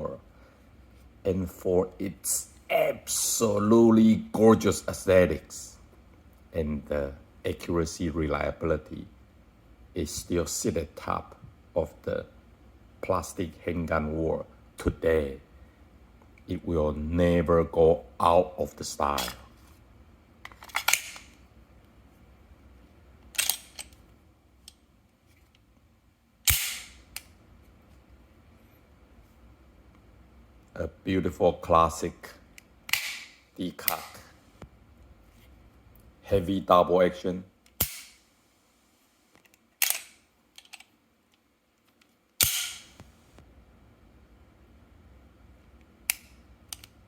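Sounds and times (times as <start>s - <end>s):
light pistol clicks: 26.5s - 27.3s, 42.4s - 43.0s
pistol metallic clacks: 26.5s - 27.3s, 42.4s - 43.0s.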